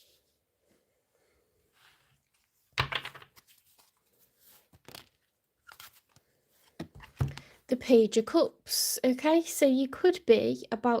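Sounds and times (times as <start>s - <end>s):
cards being shuffled: 2.3s - 7.4s.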